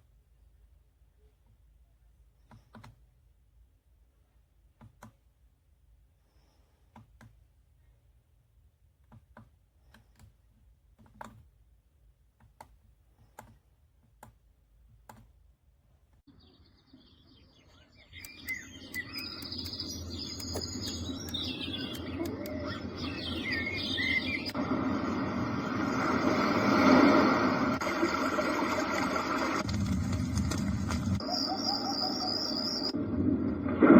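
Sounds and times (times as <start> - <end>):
birdsong chirps: 16.3 - 24.6, 31.2 - 33.0
steady noise: 18.3 - 33.9.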